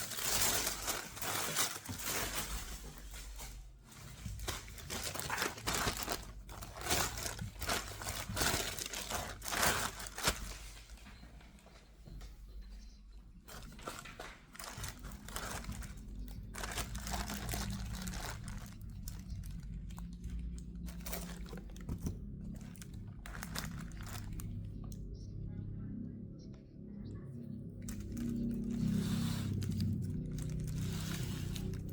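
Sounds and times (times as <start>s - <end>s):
packaging crinkling and rustling: 0.0s - 12.2s, 13.4s - 24.8s, 27.8s - 31.9s.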